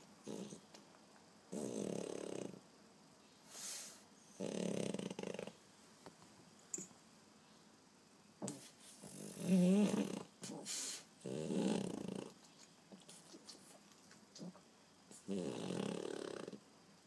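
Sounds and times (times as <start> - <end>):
dog snoring: 0.2 - 0.7, 1.5 - 2.6, 3.6 - 5.6, 9.0 - 12.4, 14.4 - 16.6
breathy hiss: 1.5 - 5.7, 8.4 - 16.8.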